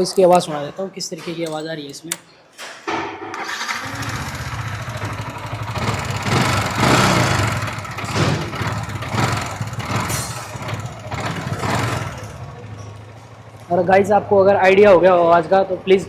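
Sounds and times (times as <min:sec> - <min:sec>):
motorcycle engine revving: 0:03.2 - 0:15.5
engine rattling knock: 0:03.3 - 0:13.9.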